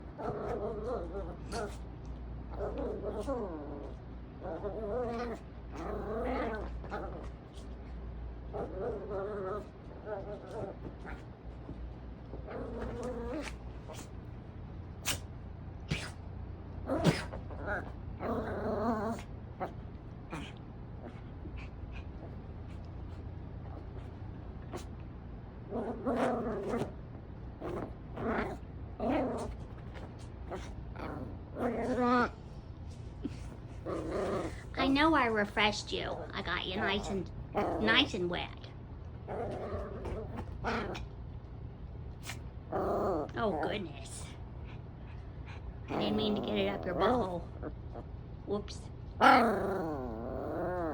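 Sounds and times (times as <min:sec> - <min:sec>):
puppy growling and whining: 0:00.0 - 0:01.9, 0:02.5 - 0:07.8, 0:08.5 - 0:14.2, 0:16.8 - 0:23.1, 0:25.7 - 0:32.6, 0:33.2 - 0:34.8, 0:36.1 - 0:38.2, 0:39.2 - 0:41.2, 0:42.2 - 0:43.8, 0:45.1 - 0:48.2, 0:49.1 - 0:50.9.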